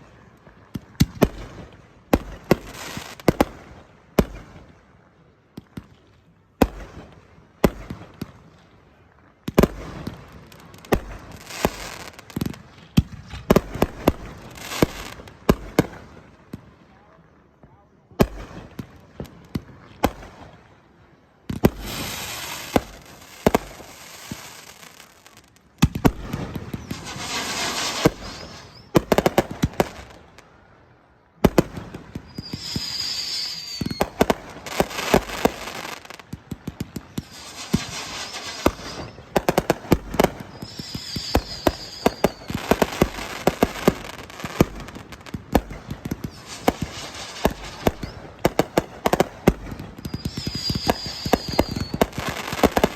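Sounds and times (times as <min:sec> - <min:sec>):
fireworks bangs and crackling: 0:00.0 - 0:52.9
high firework whistle: 0:26.7 - 0:29.3, 0:32.2 - 0:36.2, 0:37.2 - 0:44.6, 0:46.2 - 0:48.4, 0:50.0 - 0:52.9.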